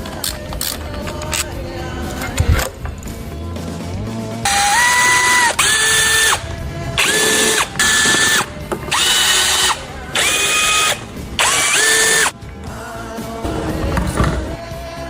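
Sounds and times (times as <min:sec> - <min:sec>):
power tool whining: 0:04.5 - 0:12.3.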